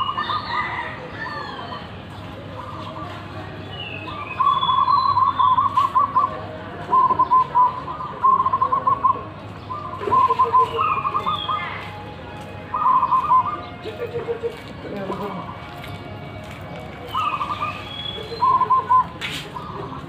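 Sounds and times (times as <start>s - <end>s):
dove cooing in trilled phrases: 4.3s - 11.8s, 12.7s - 14.7s, 17.1s - 20.0s.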